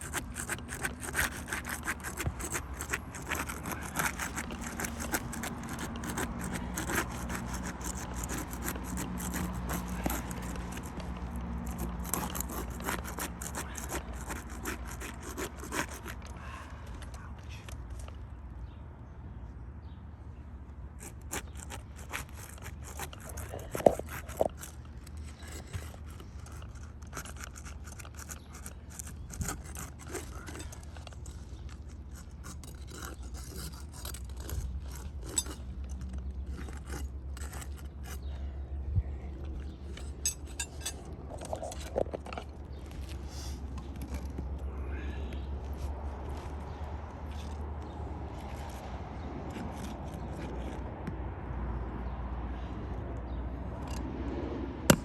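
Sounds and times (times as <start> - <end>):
pry tool scraping under shingles: 0.0 - 18.2, 20.9 - 38.4, 39.4 - 44.5, 49.4 - 51.1.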